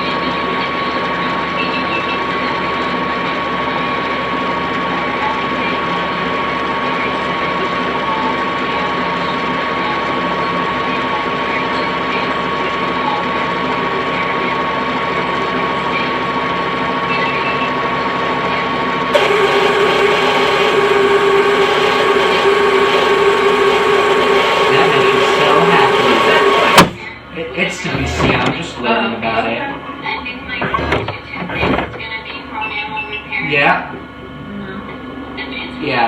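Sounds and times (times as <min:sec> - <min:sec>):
hum: 0:00.0 - 0:28.6
tape mechanism whining: 0:10.7 - 0:29.0, 0:30.5 - 0:32.1.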